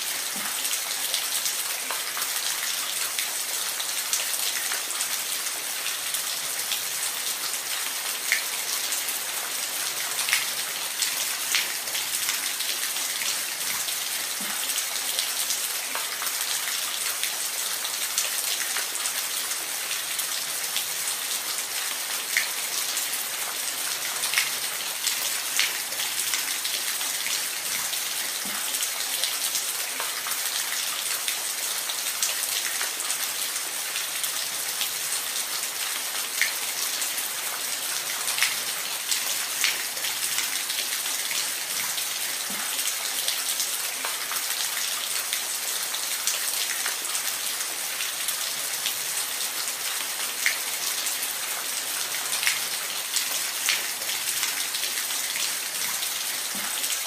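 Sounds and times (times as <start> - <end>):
water splashes and drips: 0.0 - 57.0.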